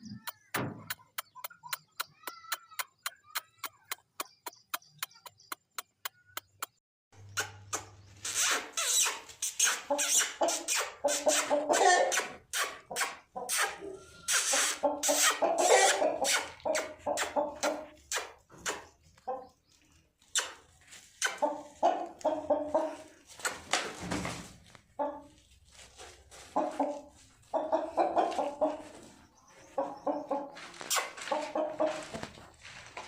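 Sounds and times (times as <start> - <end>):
sharp scratchy noises: 0.0 - 19.0
chickens clucking: 0.0 - 33.0.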